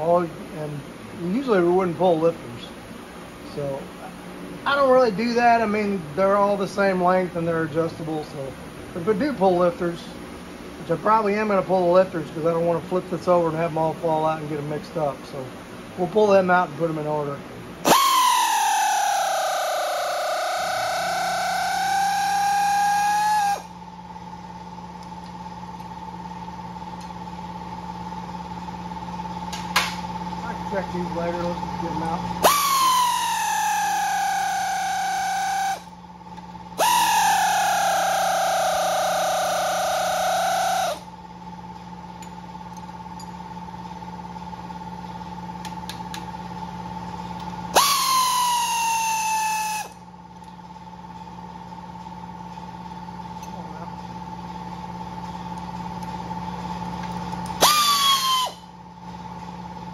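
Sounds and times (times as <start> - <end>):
steady machine hum: 0.0 - 59.9
power tool whining: 17.8 - 23.8, 31.4 - 36.0, 36.8 - 41.1, 47.8 - 50.0, 57.5 - 58.7.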